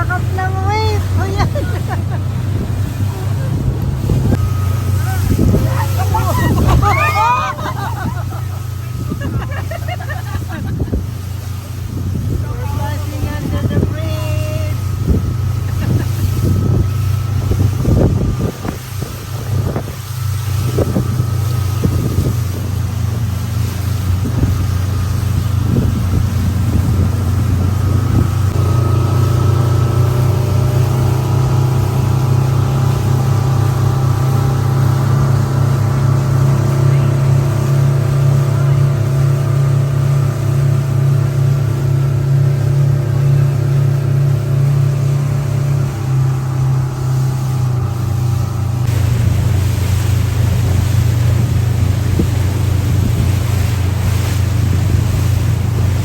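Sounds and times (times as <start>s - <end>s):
voices: 0.0s - 16.9s, 30.6s - 43.8s
motorboat engine running: 0.0s - 56.0s.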